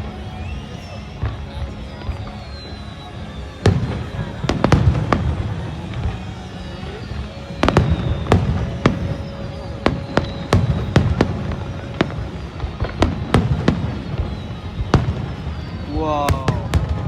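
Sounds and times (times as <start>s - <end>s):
fireworks bangs: 0.0s - 17.0s.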